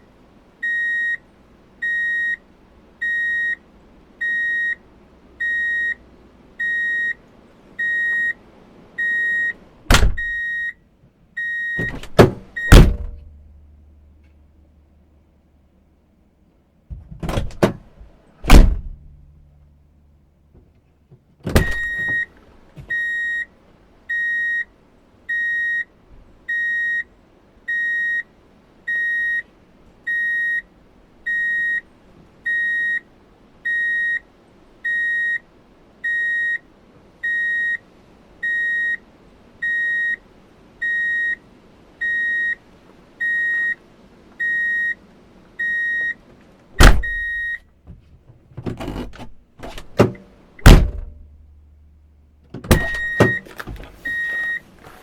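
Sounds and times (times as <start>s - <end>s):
vehicle reversing beeper: 0.7s - 1.2s, 1.8s - 2.4s, 3.0s - 3.6s, 4.2s - 4.8s, 5.4s - 6.0s, 6.6s - 7.2s, 7.8s - 8.4s, 9.0s - 9.6s, 10.2s - 10.8s, 22.9s - 23.5s, 26.5s - 27.1s, 27.7s - 28.3s, 28.9s - 29.5s, 32.5s - 33.0s, 33.7s - 34.2s, 36.1s - 36.6s, 37.3s - 37.8s, 38.5s - 39.0s, 40.8s - 41.4s, 42.0s - 42.6s, 43.2s - 43.8s, 44.4s - 45.0s, 47.0s - 47.6s, 54.1s - 54.6s
loud clunks and knocks: 9.9s - 10.4s, 11.8s - 13.4s, 16.9s - 19.4s, 20.6s - 22.2s, 46.8s - 51.4s, 52.5s - 54.0s
sharp clunk: 9.9s - 10.4s, 11.8s - 13.5s, 16.9s - 19.4s, 21.5s - 22.2s, 46.8s - 47.4s, 48.6s - 51.4s, 52.5s - 54.0s.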